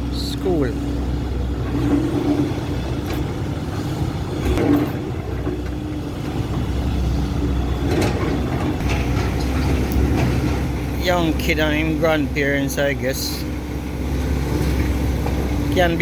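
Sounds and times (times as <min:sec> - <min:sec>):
truck engine idling: 0:00.0 - 0:16.0.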